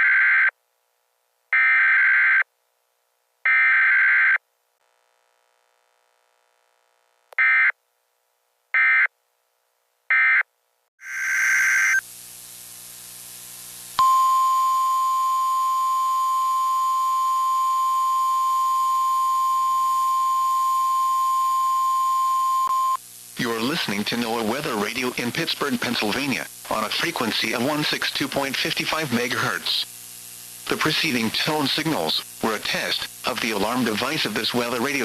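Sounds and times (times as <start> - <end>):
screeching digital data bursts: 11.0 - 12.0
steady warning alarm tone: 14.0 - 23.0.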